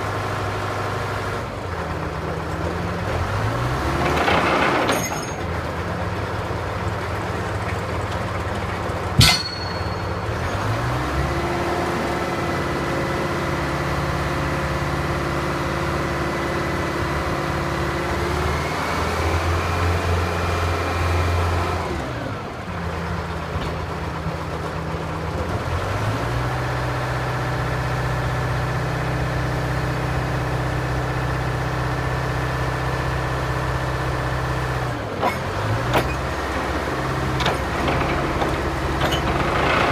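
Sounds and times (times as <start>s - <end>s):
drill rig engine running: 3.8s - 18.2s, 35.2s - 39.9s
sharp metal clank: 9.2s - 10.9s.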